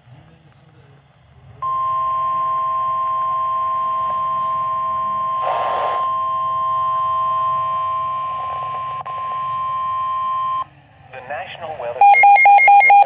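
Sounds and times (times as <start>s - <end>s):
loud steady alarm beep: 1.6s - 10.6s, 12.0s - 13.0s.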